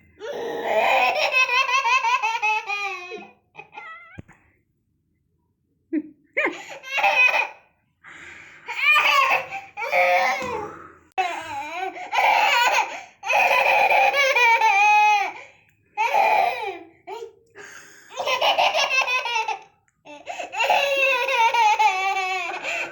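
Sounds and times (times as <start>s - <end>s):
baby laughing: 0.6s - 4.2s, 6.6s - 7.6s, 8.7s - 10.5s, 11.2s - 15.4s, 18.1s - 22.9s.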